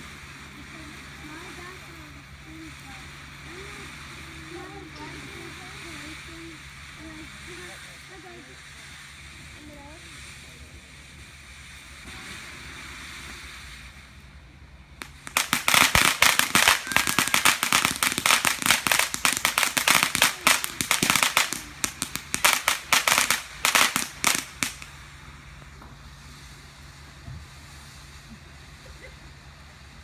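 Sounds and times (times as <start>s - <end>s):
wind hiss: 0.0s - 30.0s
firecrackers cracking: 15.0s - 26.4s.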